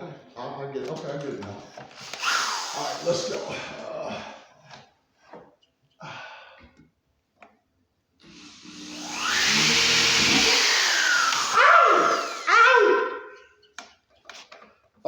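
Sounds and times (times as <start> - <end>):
power tool running: 2.0 - 3.5, 8.2 - 12.9.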